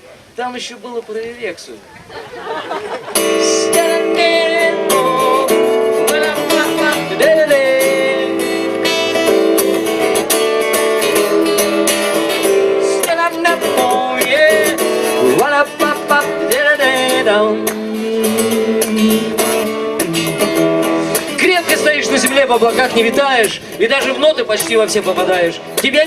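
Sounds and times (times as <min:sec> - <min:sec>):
strummed acoustic guitar: 0:03.0 - 0:26.0.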